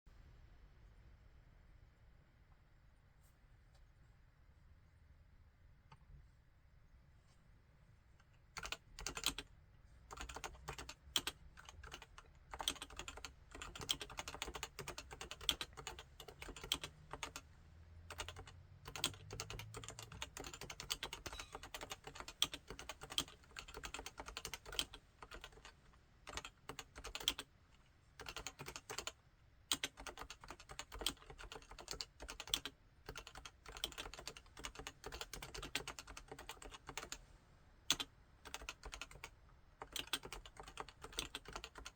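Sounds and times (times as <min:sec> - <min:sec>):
typing on a keyboard: 0:08.6 - 0:09.5, 0:10.1 - 0:17.5, 0:18.1 - 0:27.5, 0:28.2 - 0:37.2, 0:37.9 - 0:41.9.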